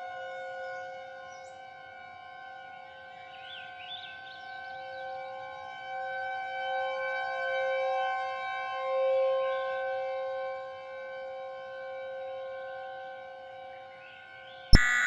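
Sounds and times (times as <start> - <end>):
warning siren steady tone: 14.8 - 15.0.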